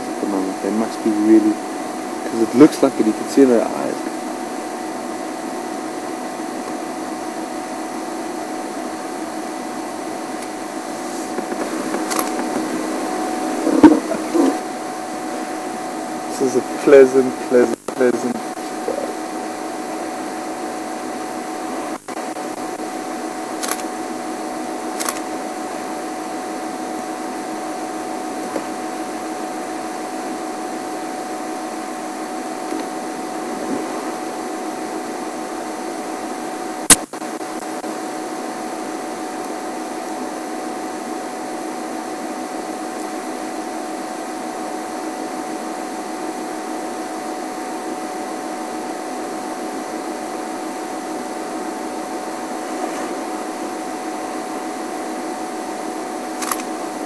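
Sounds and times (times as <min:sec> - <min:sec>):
steady mechanical hum: 0:00.0 - 0:57.0
sharp clicks: 0:11.4 - 0:12.5, 0:23.6 - 0:23.9, 0:25.0 - 0:25.2, 0:56.4 - 0:56.7.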